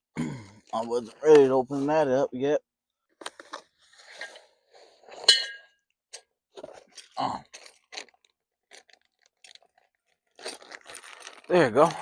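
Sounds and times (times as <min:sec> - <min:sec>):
packaging rustling: 0:06.6 - 0:12.0.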